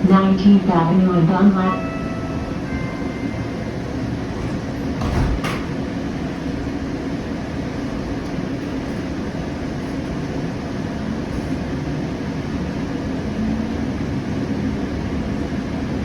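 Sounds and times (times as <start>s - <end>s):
train interior low rumble: 0.0s - 16.0s
sliding doors closing thud: 4.4s - 5.8s.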